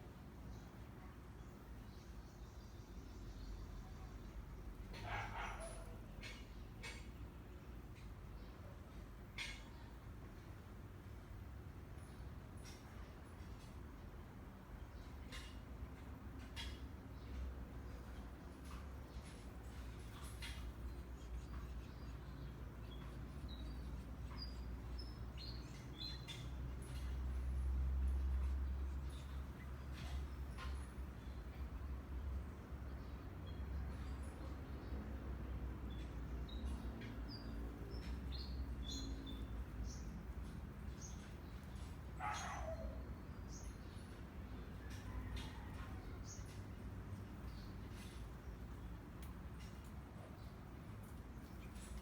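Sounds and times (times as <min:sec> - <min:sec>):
small birds chirping: 0:14.8 - 0:52.0.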